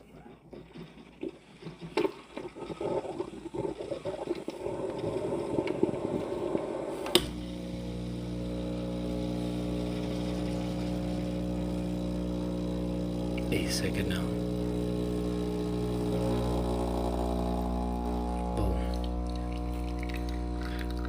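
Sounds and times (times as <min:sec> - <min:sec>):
espresso machine gurgling: 0:02.0 - 0:21.0
espresso pump humming: 0:05.2 - 0:21.0.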